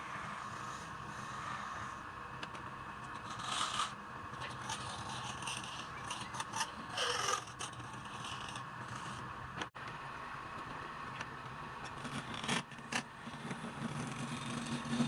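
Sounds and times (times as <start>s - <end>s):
turning tool scraping wood: 3.2s - 9.2s.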